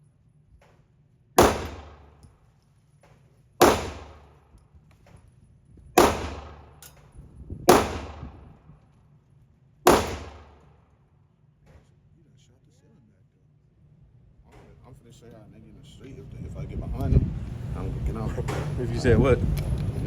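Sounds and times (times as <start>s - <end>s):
gunshots with long echo: 1.4s - 2.2s, 3.6s - 4.4s, 6.0s - 6.8s, 7.7s - 8.6s, 9.9s - 10.8s.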